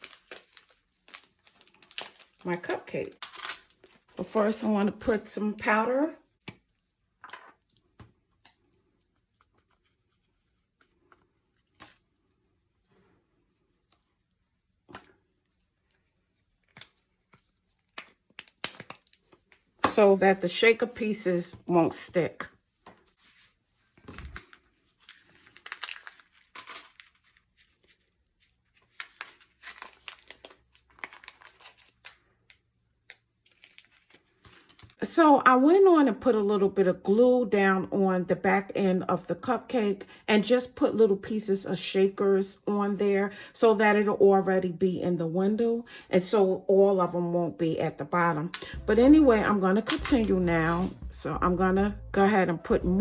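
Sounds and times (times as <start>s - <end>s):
paper rustling and crinkling: 0.0s - 6.9s, 7.6s - 14.1s, 22.7s - 32.6s, 33.4s - 35.0s.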